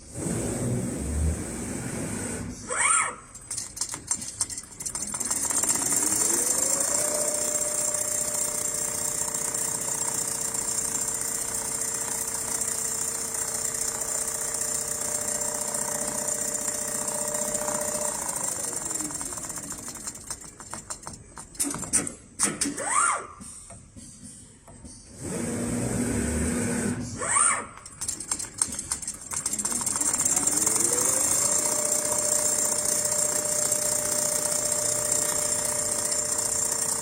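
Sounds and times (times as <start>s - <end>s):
sewing machine stitching rattle: 3.2s - 22.8s, 25.2s - 37.0s
sewing machine clicks: 3.3s - 22.8s, 27.7s - 37.0s.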